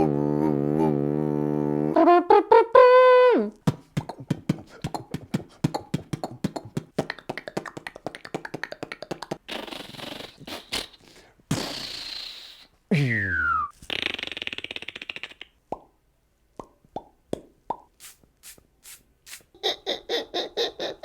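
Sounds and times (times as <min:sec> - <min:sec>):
trumpet-like mouth notes: 0:00.0 - 0:03.6
mouth didgeridoo imitation: 0:00.0 - 0:07.5
percussive mouth clicks and pops: 0:03.6 - 0:12.6, 0:13.8 - 0:18.3
mouth hiss: 0:09.5 - 0:13.2, 0:18.0 - 0:19.5.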